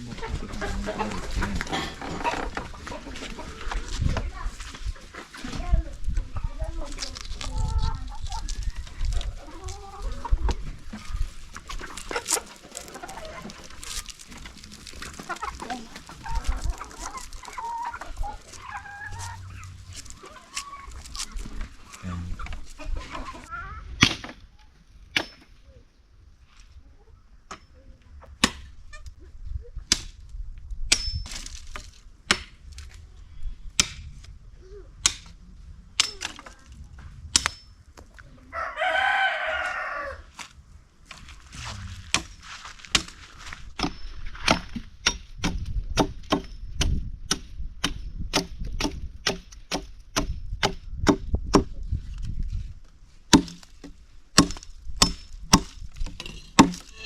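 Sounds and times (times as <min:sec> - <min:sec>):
rooster crowing: 0:38.5 - 0:40.3.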